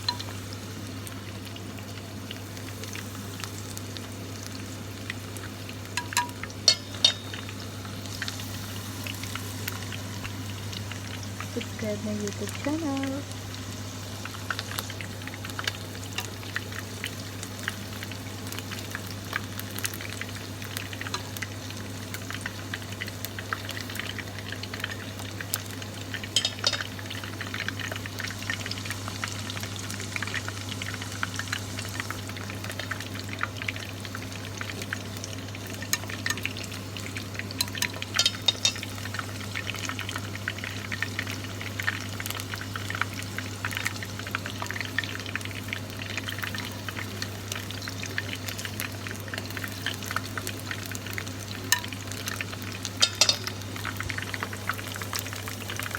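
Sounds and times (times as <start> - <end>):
chicken deep-frying in oil: 0.0 - 55.9.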